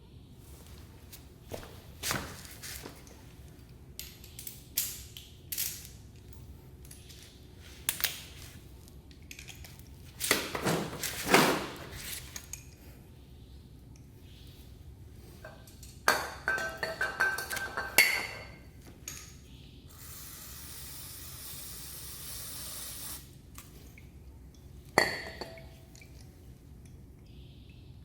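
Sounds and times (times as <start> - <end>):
metal tools clinking and knocking: 15.4 - 19.4.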